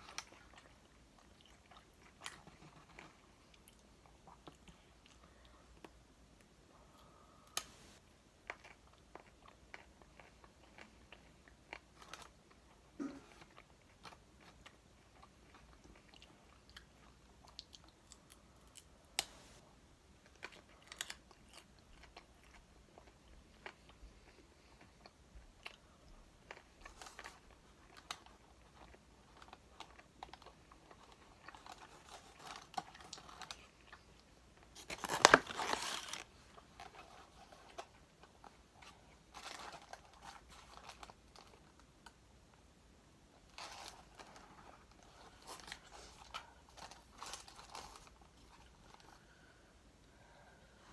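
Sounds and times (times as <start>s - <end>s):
chewing crispy chicken: 8.4s - 19.0s, 20.2s - 34.3s.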